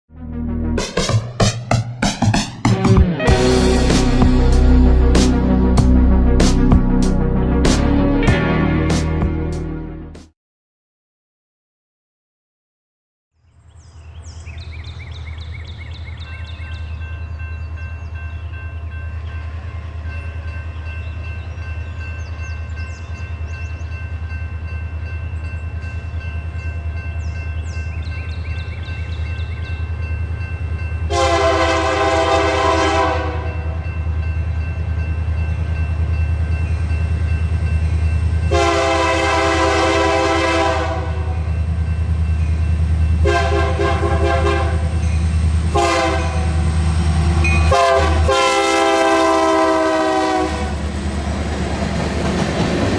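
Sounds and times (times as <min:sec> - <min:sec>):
diesel locomotive engine rumble: 0:03.0 - 0:09.9, 0:13.7 - 0:52.9
multi-tone air horn blasts: 0:03.2 - 0:05.8, 0:31.1 - 0:33.8, 0:38.5 - 0:41.5, 0:43.2 - 0:45.0, 0:45.7 - 0:46.8, 0:47.4 - 0:50.8.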